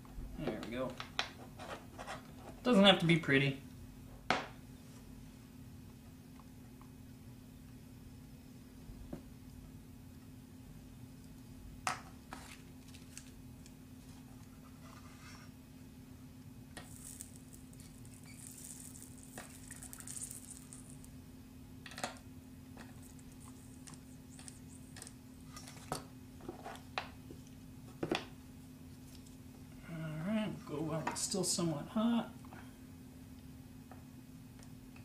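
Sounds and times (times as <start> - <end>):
solder sizzling: 16.7 - 21.2.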